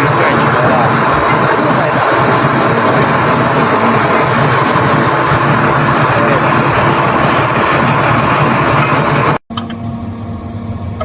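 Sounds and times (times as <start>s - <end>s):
heavy machine engine running: 0.0s - 11.0s.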